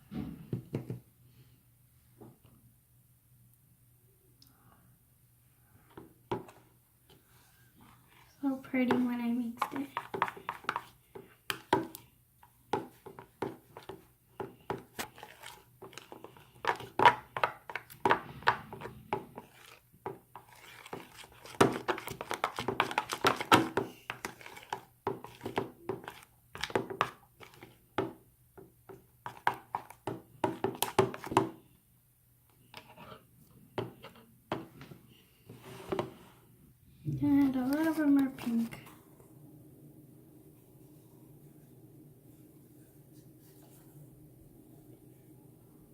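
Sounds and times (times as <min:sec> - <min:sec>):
slime stirred in a bowl: 0:06.3 - 0:31.6, 0:37.2 - 0:38.9.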